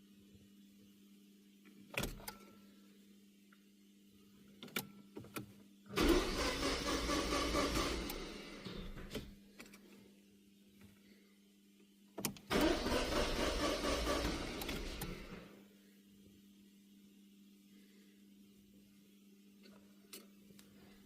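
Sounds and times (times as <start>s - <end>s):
starter motor cranking engine: 6.0s - 8.4s, 12.5s - 15.4s.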